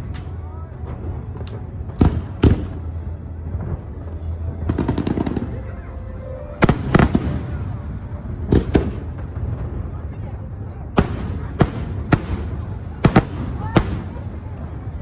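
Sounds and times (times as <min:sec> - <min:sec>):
fireworks booming: 0:00.0 - 0:15.0
fireworks crackling: 0:00.0 - 0:15.0.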